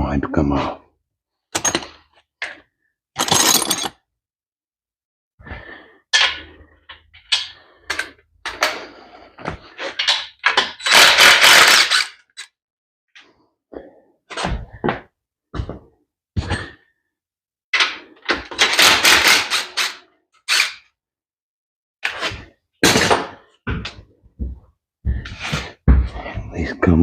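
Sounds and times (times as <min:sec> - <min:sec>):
metal tools clanking and scraping: 0:03.2 - 0:04.0, 0:09.8 - 0:12.5.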